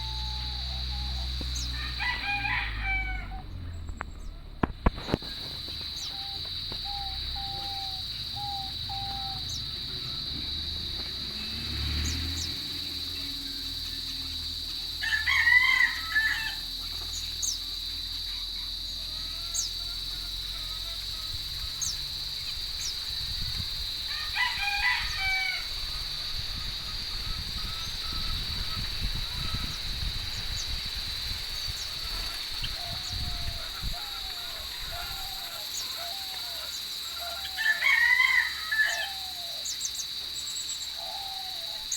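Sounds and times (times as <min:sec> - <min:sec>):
rooster crowing: 0:00.0 - 0:03.6, 0:14.8 - 0:21.6, 0:23.9 - 0:26.3, 0:31.9 - 0:39.7.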